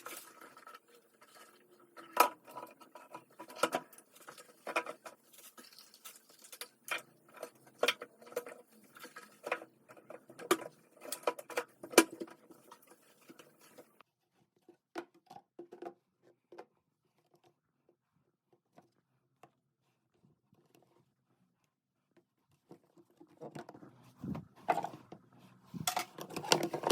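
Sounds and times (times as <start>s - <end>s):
rustling: 0.0s - 14.0s.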